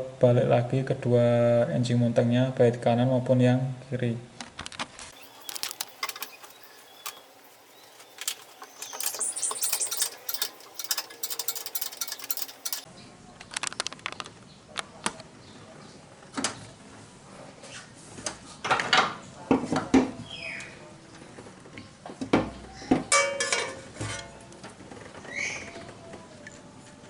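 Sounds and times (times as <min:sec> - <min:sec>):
metal tools clinking on metal: 0:05.2 - 0:12.9
rapid clicks: 0:05.2 - 0:12.9.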